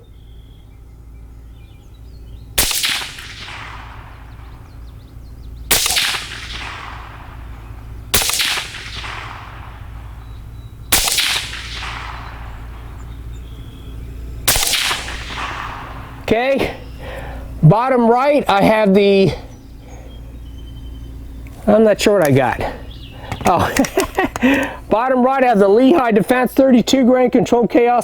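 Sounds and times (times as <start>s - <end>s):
suppressed pistol shots: 2.0s - 17.0s.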